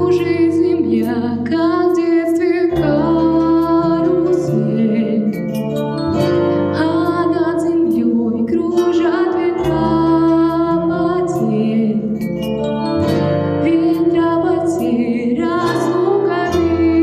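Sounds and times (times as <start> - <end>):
woman singing: 0.0 - 5.4, 6.7 - 12.3, 13.6 - 17.0
sustained instrumental accompaniment: 0.0 - 17.0.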